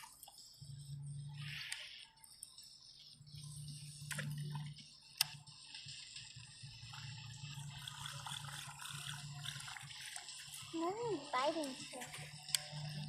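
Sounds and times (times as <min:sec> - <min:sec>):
water lapping and dripping: 0:06.8 - 0:11.0.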